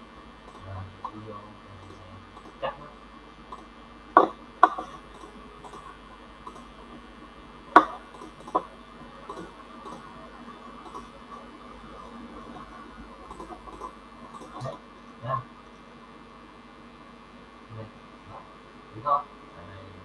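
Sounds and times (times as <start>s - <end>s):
faint background hum: 0.0s - 20.0s
computer mouse clicking: 1.8s - 2.6s, 3.5s - 7.0s, 7.8s - 14.8s.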